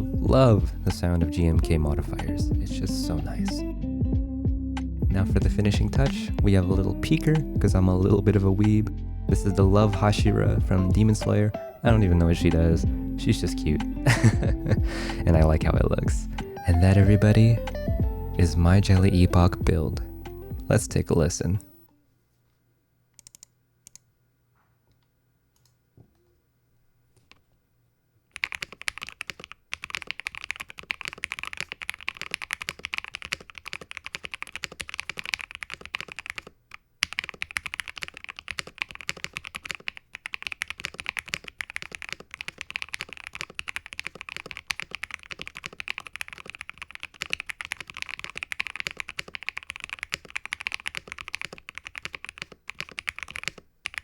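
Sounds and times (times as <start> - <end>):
mechanical keyboard typing: 28.3 - 54.0.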